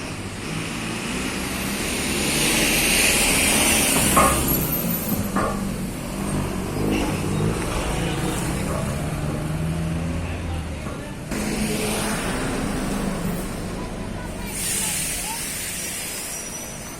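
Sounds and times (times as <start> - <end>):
vehicle passing: 5.7 - 14.6.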